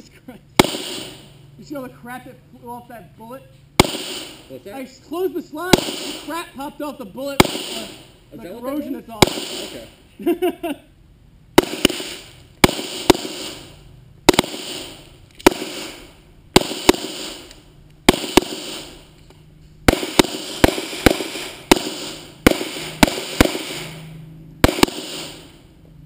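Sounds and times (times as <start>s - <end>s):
gunshots with echo: 0.6s - 1.4s, 3.8s - 4.6s, 5.6s - 6.5s, 7.3s - 8.2s, 9.2s - 10.0s, 11.6s - 17.5s, 18.1s - 19.1s, 19.8s - 25.7s.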